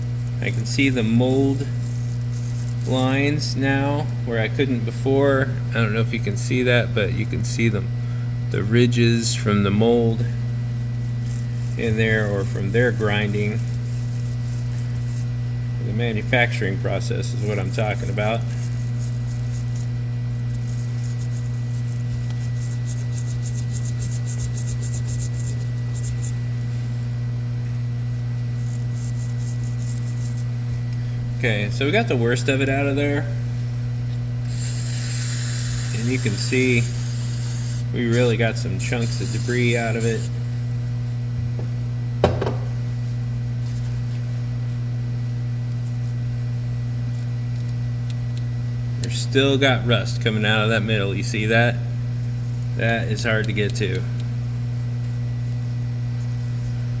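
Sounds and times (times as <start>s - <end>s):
wire brush scrubbing metal: 0.0s - 3.6s, 11.0s - 26.4s, 28.5s - 30.6s, 34.5s - 40.4s
steady low hum: 0.0s - 57.0s.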